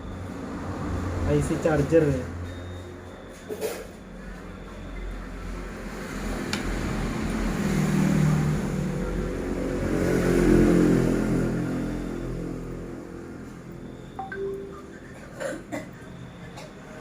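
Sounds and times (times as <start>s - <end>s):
vehicle engine passing by: 5.9s - 13.8s.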